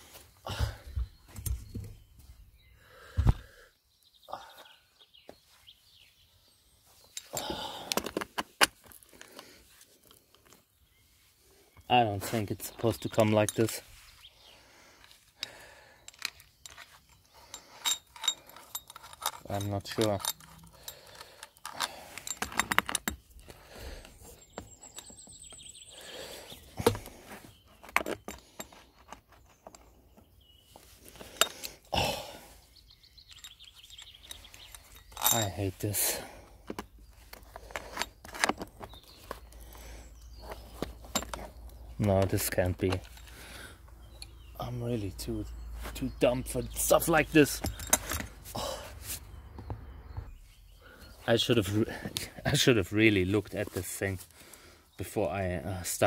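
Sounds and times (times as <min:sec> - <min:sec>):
chainsaw parts clicking and clinking: 0:07.1 - 0:10.6, 0:12.6 - 0:13.8, 0:15.0 - 0:25.7, 0:27.8 - 0:30.0, 0:31.0 - 0:31.9, 0:33.2 - 0:44.5, 0:46.0 - 0:48.7
saw chain jingling: 0:16.6 - 0:23.2, 0:33.2 - 0:36.2.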